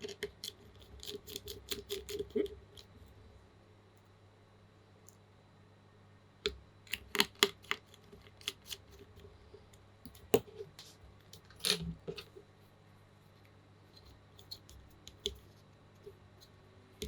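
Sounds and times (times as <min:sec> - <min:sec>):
plastic keyboard parts clicking: 0:06.9 - 0:08.8.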